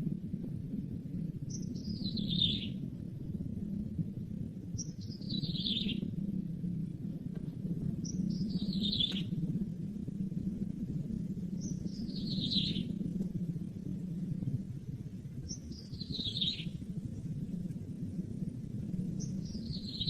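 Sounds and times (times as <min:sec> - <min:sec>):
low hum: 0:00.0 - 0:20.0
bird calling: 0:08.0 - 0:09.3.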